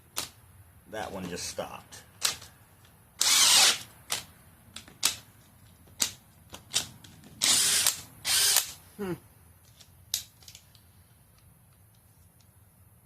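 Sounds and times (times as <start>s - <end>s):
hammer drill bursts: 3.2s - 3.9s, 7.4s - 8.8s.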